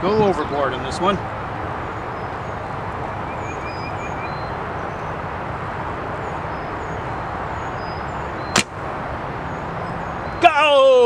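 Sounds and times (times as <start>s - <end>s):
strong wind buffeting microphone: 0.0s - 3.3s
sharp snap: 8.6s - 8.8s.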